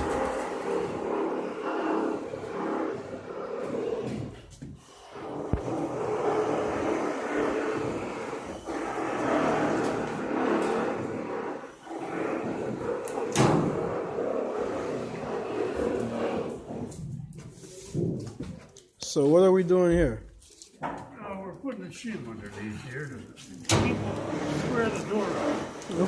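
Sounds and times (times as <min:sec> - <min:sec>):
rumbling site noise: 0:00.0 - 0:04.4.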